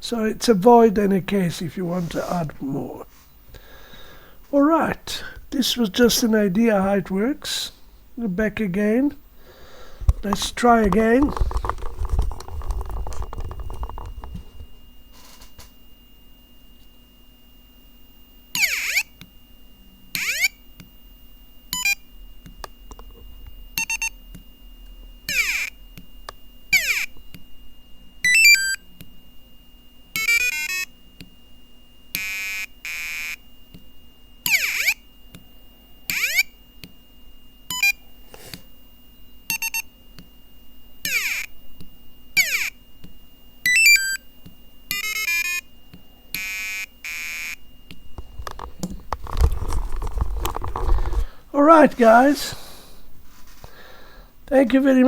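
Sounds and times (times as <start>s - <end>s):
piezo buzzer sound effects: 18.5s - 19.2s, 20.1s - 20.7s, 21.7s - 22.1s, 23.8s - 24.2s, 25.2s - 25.9s, 26.7s - 27.2s, 28.2s - 28.9s, 30.1s - 31.0s, 32.1s - 33.5s, 34.4s - 35.1s, 36.0s - 36.6s, 37.7s - 38.0s, 39.5s - 39.9s, 41.0s - 41.6s, 42.4s - 42.8s, 43.6s - 44.2s, 44.9s - 45.7s, 46.3s - 47.6s.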